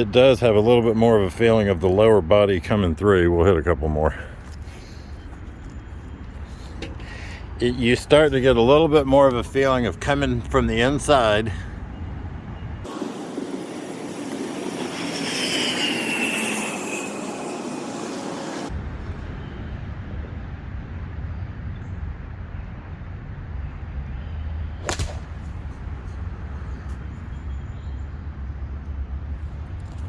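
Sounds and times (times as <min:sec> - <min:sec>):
golf club striking ball: 0:24.8 - 0:26.3.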